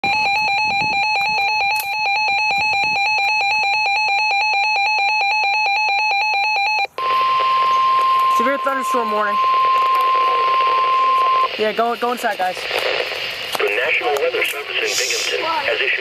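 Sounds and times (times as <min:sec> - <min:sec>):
warbling electronic alarm: 0:00.0 - 0:12.6
steady single-pitch warning tone: 0:00.0 - 0:12.7.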